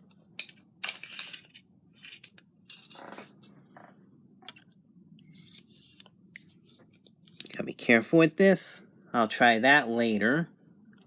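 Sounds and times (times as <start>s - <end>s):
wire antenna being handled: 5.3s - 7.6s.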